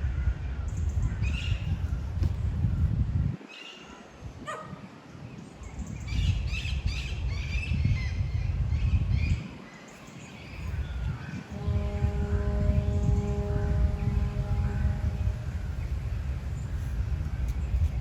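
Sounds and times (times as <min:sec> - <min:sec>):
wind on microphone: 0:00.0 - 0:18.0
steady multi-tone hum: 0:10.7 - 0:18.0.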